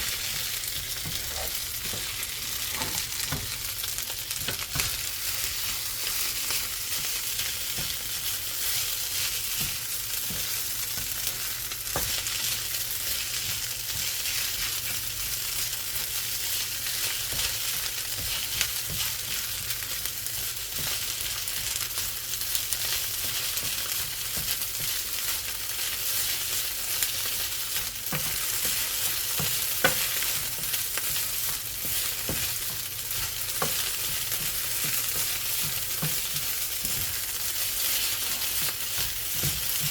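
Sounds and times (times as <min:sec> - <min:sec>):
utensil scraping a pan: 0:00.0 - 0:03.4
fried rice sizzling in a pan: 0:00.0 - 0:39.9.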